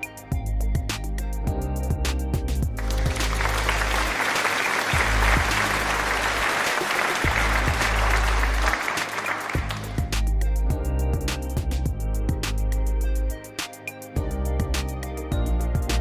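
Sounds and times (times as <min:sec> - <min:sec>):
background music: 0:00.0 - 0:16.0.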